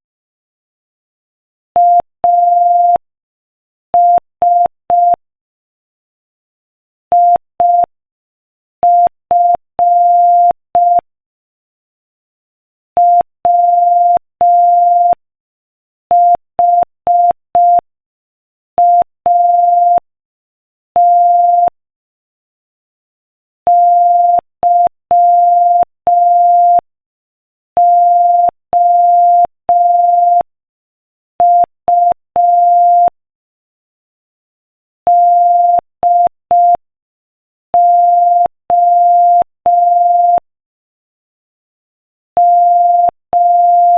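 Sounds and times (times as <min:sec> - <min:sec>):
morse code beeps: 0:23.7 - 0:26.8, 0:27.8 - 0:30.5, 0:31.4 - 0:33.2, 0:35.1 - 0:36.8, 0:37.8 - 0:40.4, 0:42.4 - 0:43.9.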